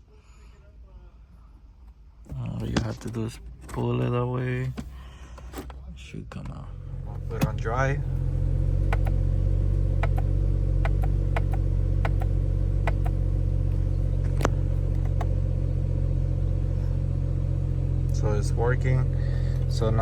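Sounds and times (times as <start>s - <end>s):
car engine idling: 2.3s - 20.0s
shift paddle clicks: 8.8s - 9.2s, 10.0s - 15.3s.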